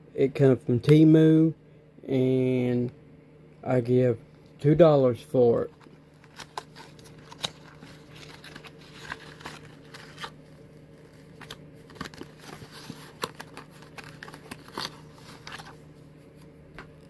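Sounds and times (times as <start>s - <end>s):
steady low hum: 0.0s - 17.0s
plastic packaging crinkling: 5.8s - 15.8s.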